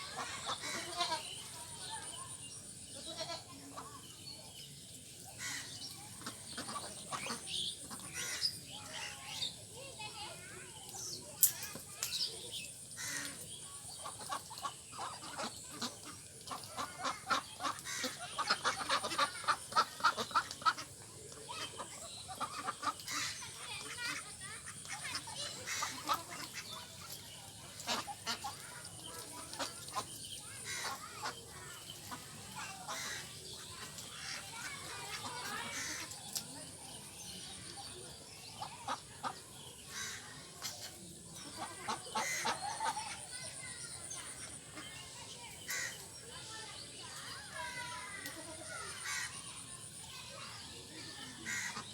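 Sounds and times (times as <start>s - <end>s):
ducks quacking: 0.0s - 1.5s, 5.4s - 9.1s, 14.0s - 36.2s, 41.4s - 43.2s, 45.6s - 46.1s, 51.4s - 51.9s.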